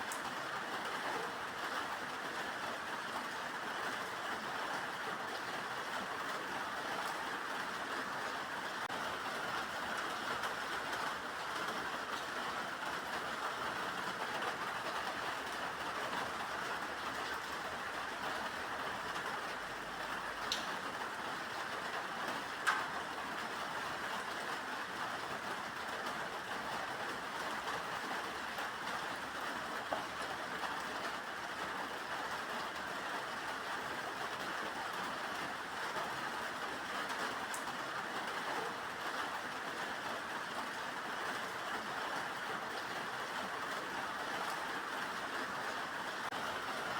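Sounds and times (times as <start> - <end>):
steady rain hiss: 0.0 - 46.9
drip-like ticks: 20.5 - 20.7, 22.6 - 22.9.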